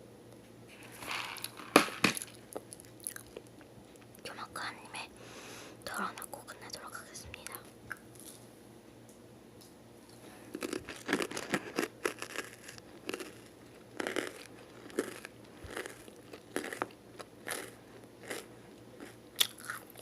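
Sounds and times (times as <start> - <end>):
person chewing crisp snack: 1.0 - 3.5, 10.1 - 20.0.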